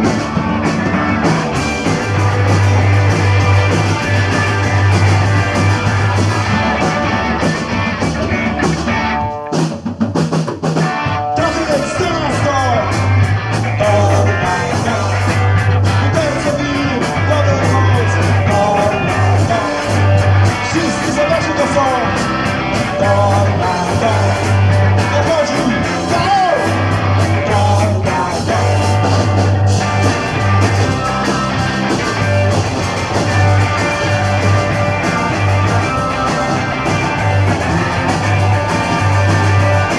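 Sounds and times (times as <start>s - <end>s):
punk rock band playing live: 0.0s - 39.9s
person singing: 11.4s - 13.0s, 13.7s - 22.2s, 22.8s - 26.8s, 27.4s - 29.4s.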